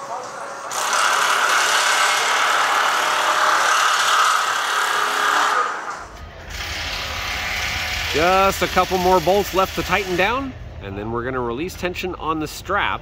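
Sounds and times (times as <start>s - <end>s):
construction machinery noise: 0.0s - 11.2s.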